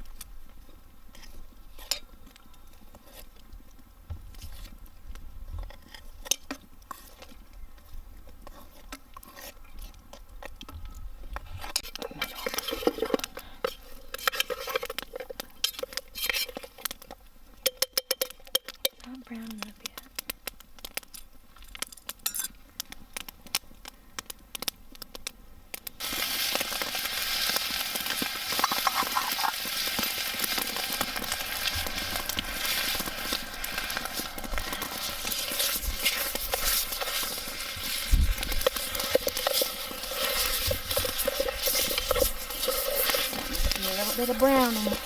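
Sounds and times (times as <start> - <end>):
light crackles: 0.0 - 45.0
meat sizzling loudly: 25.8 - 45.0.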